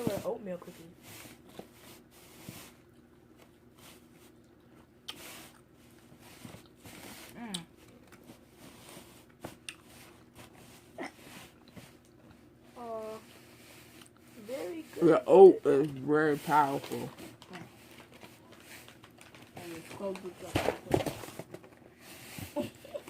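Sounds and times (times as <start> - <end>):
chewing and crunching cookies: 1.2 - 20.5
small clicks and crackles: 16.7 - 20.6.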